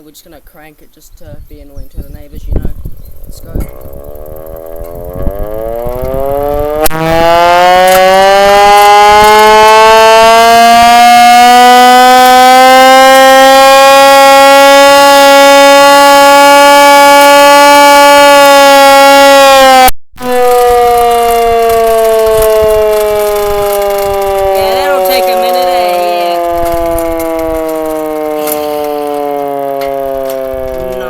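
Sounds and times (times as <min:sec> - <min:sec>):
air raid siren winding up: 0:03.1 - 0:31.0.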